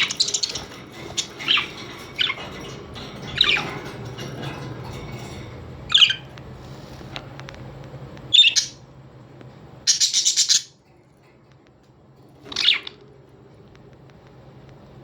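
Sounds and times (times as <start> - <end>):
rattling bird call: 0.0 - 6.3
birds chirping: 0.0 - 7.1, 8.2 - 9.0, 9.8 - 13.6.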